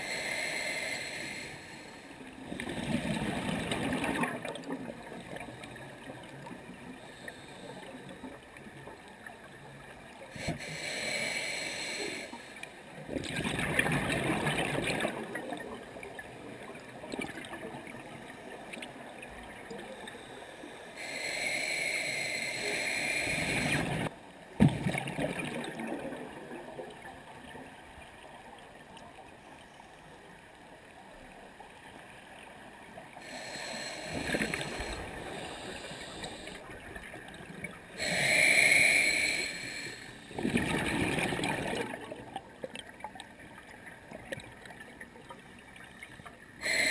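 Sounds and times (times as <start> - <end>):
exhaled bubbles rushing underwater: 2.5 - 5.6, 13.1 - 18.2, 40.3 - 44.8.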